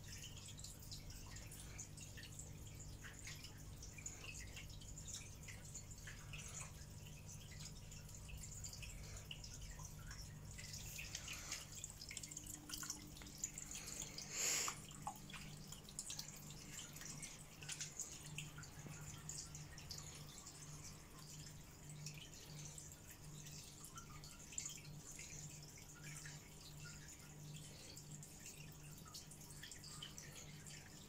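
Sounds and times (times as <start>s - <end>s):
water trickling and dripping: 0.0s - 31.0s.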